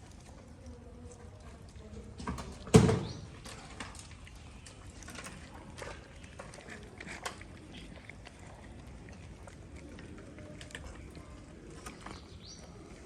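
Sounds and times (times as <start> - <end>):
faint clicks and rustles: 0.0 - 13.0.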